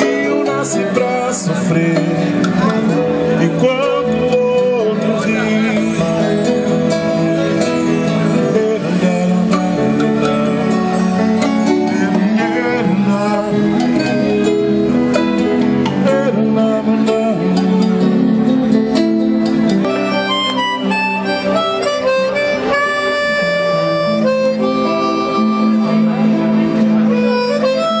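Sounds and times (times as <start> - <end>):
strummed acoustic guitar: 0.0 - 28.0
harmonica playing held notes: 19.7 - 28.0.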